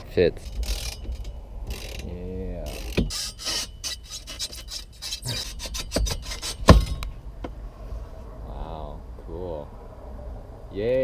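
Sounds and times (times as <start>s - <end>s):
steel bar scraping: 0.4s - 7.1s.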